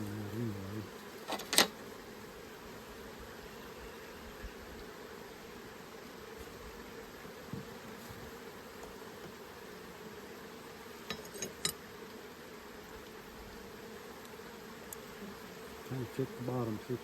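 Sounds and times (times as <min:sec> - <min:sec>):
honeybees buzzing: 0:00.0 - 0:17.0.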